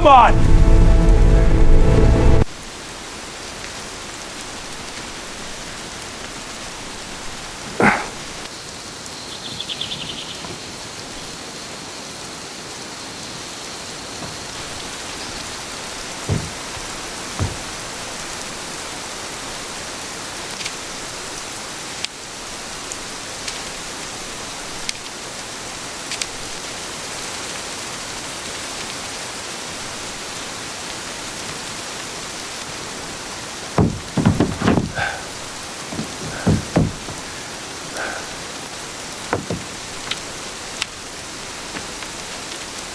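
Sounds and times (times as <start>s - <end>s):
rain falling: 0.0s - 42.9s
knocks: 16.3s - 17.8s, 33.8s - 35.1s, 35.9s - 37.3s, 39.3s - 39.7s.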